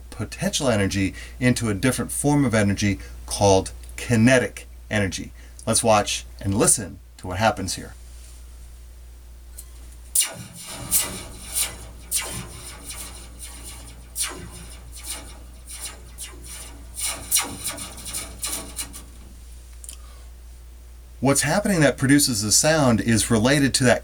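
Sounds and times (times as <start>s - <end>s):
metal slinky laser-like zaps: 10.2s - 19.5s.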